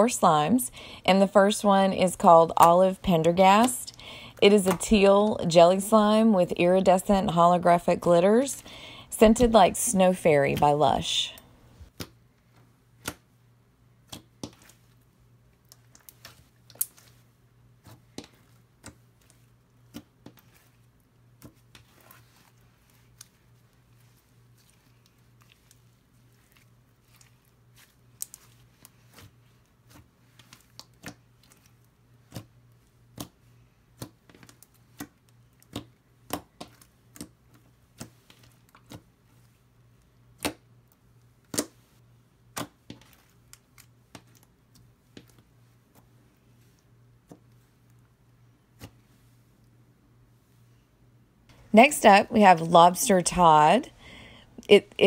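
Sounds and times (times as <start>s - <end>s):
low steady hum: 0.0s - 55.0s.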